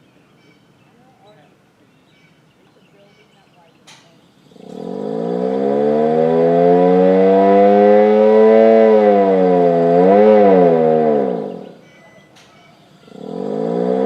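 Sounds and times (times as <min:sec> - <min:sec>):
warning siren wailing: 0:04.5 - 0:14.0.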